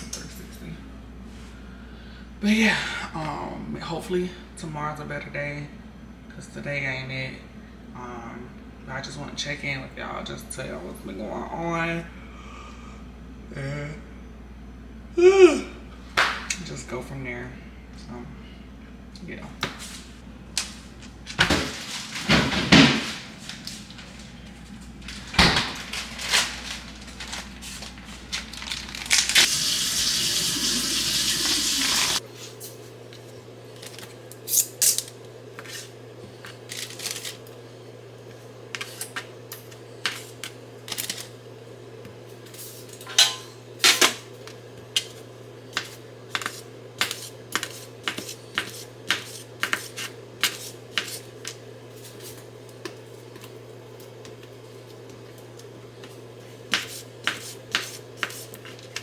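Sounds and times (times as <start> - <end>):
steady low hum: 0.0 - 29.4, 32.2 - 59.0
running tap hiss: 29.5 - 32.2
dishes and utensils clinking: 43.0 - 44.2.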